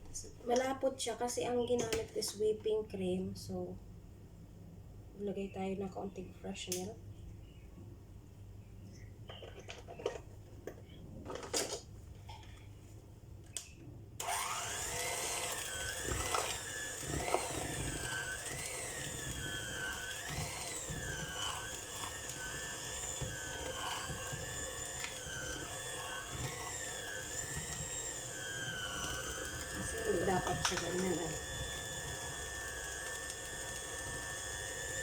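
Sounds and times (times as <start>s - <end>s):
electric mixer whining: 14.2s - 35.0s.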